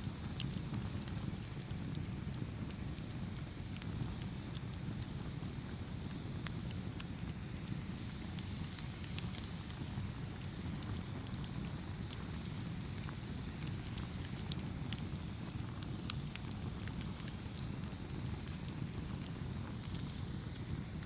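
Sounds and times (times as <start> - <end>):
campfire burning rumble: 0.0 - 21.0
fire pops and snaps: 0.0 - 21.0.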